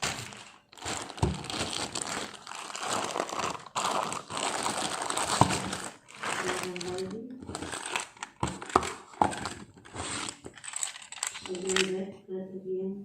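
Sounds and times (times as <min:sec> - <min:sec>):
packaging rustling and crinkling: 0:00.0 - 0:11.9.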